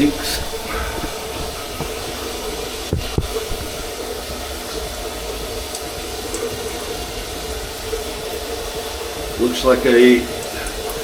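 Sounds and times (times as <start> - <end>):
light knocks: 0.0 - 3.9
faucet running water: 0.0 - 11.0.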